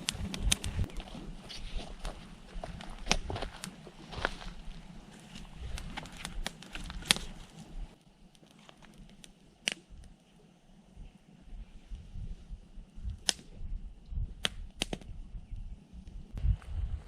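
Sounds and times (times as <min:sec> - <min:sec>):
dry wood crackling and snapping: 0:00.0 - 0:10.4, 0:13.0 - 0:13.7, 0:14.3 - 0:16.4.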